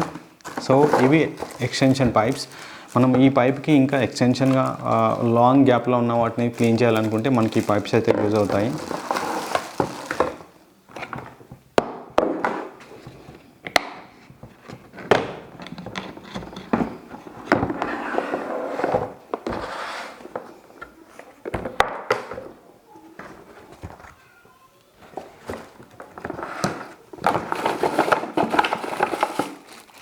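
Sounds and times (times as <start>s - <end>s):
rustling: 0.0s - 11.2s, 25.0s - 30.0s
plastic parts clunking: 0.0s - 22.6s, 25.0s - 30.0s.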